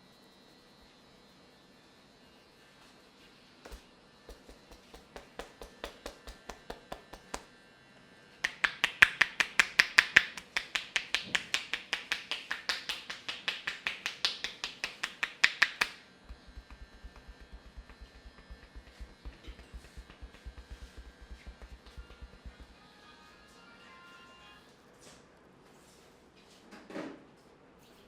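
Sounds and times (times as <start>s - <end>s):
rapid sharp clicks: 3.7s - 7.5s, 8.5s - 22.8s.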